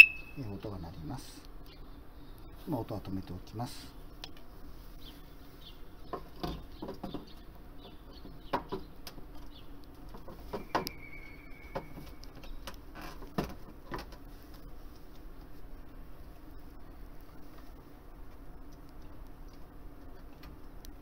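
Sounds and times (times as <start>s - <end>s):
high steady tone: 0.0s - 0.5s.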